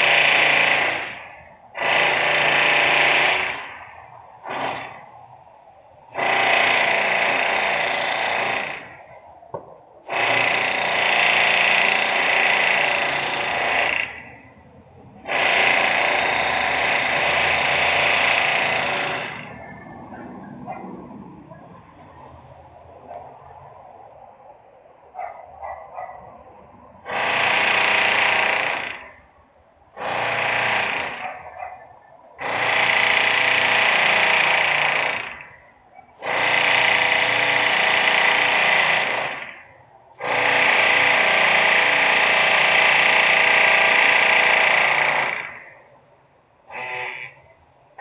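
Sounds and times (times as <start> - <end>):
industrial power tool running: 0.0 - 3.8, 6.1 - 9.0, 10.1 - 14.4, 15.2 - 19.6, 27.0 - 29.1, 30.0 - 31.3, 32.4 - 35.5, 36.2 - 45.8, 46.7 - 47.4.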